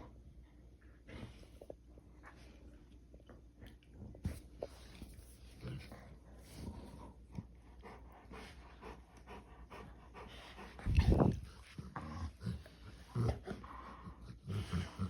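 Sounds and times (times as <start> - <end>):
dogs panting: 6.5 - 15.0.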